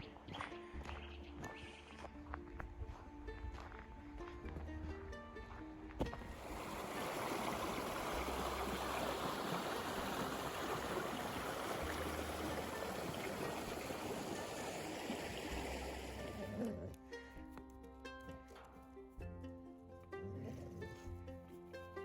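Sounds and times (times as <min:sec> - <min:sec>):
running water rushing: 0:06.3 - 0:17.0.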